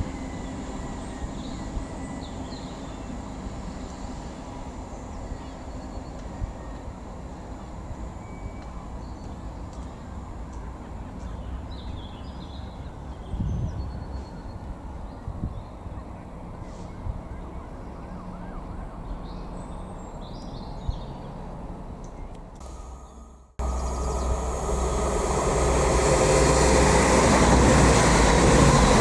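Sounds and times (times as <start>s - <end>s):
low outdoor rumble: 21.7s - 29.0s.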